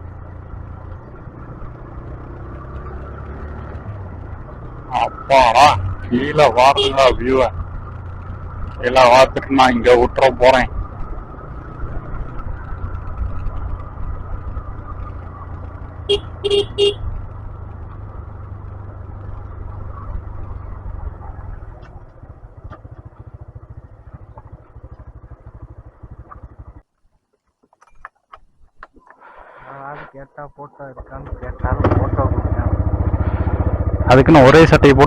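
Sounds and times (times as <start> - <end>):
motorcycle engine running: 0.0 - 26.9, 31.0 - 35.0
motorcycle horn toots: 6.5 - 7.3, 16.0 - 17.1.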